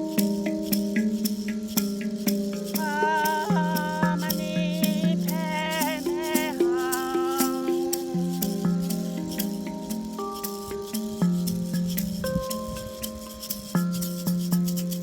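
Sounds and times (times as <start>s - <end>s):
shaker rattle beat: 0.0s - 15.0s
wavering melodic line with vibrato: 0.0s - 15.0s.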